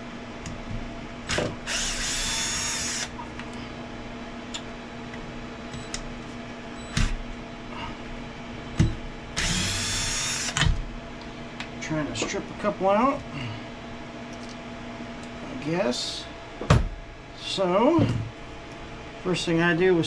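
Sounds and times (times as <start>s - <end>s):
small electric driver spinning: 1.7s - 3.1s, 9.4s - 10.6s.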